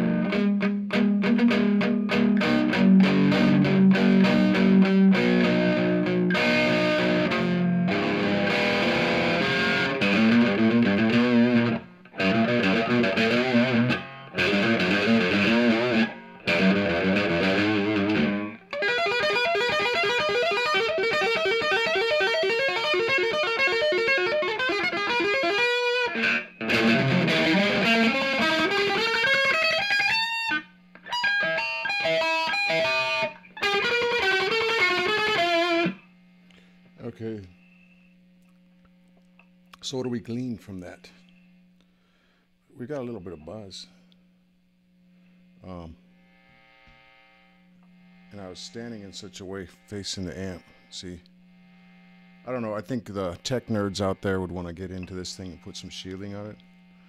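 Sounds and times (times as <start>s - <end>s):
overdriven electric guitar: 0.0s - 37.0s.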